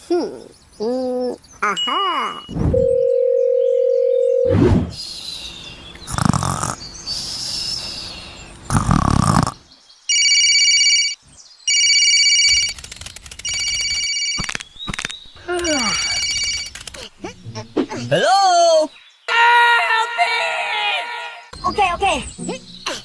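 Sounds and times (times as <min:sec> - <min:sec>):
telephone ringing: 0:02.4 - 0:04.5, 0:10.1 - 0:12.8, 0:13.4 - 0:14.5, 0:15.6 - 0:17.0.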